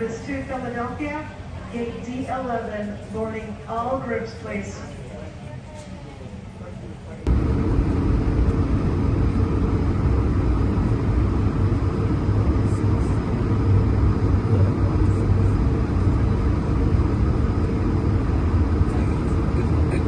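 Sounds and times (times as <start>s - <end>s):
airliner engine rumble: 6.0s - 20.0s
steady hum: 7.1s - 20.0s.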